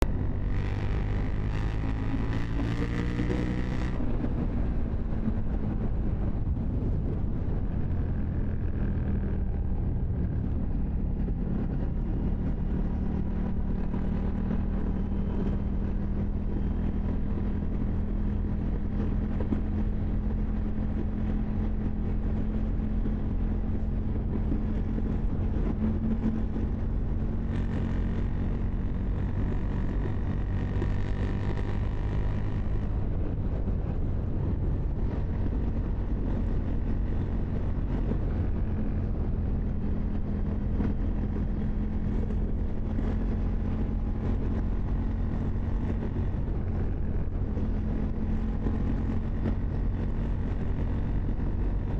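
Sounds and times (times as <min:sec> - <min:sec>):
motorcycle engine running: 0:00.0 - 0:51.9.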